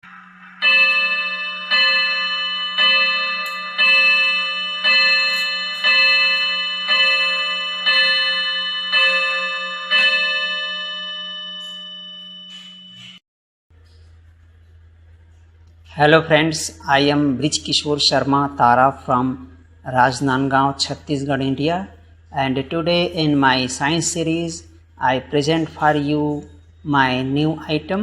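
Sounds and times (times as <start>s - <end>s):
wall clock striking: 0.6s - 13.2s.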